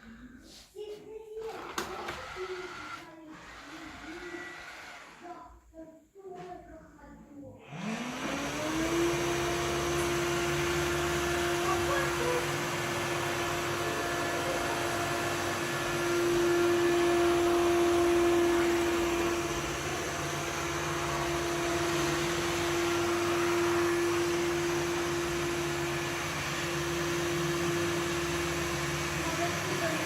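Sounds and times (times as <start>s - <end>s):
robot vacuum cleaner motor whine: 1.6s - 5.4s, 7.6s - 30.0s.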